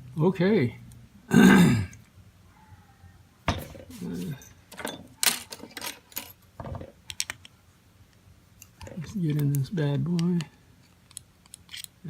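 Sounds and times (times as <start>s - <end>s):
small metal clicks and clinks: 11.1s - 12.0s.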